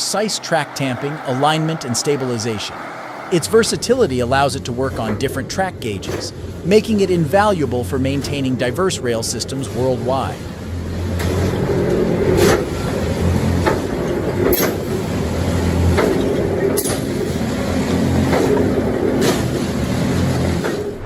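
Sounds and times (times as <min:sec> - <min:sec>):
diesel hum: 0:00.0 - 0:06.6.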